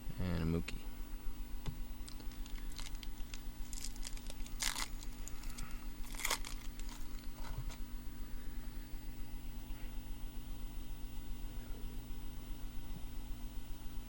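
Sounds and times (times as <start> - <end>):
foil wrapper tearing and crinkling: 2.0 - 7.6.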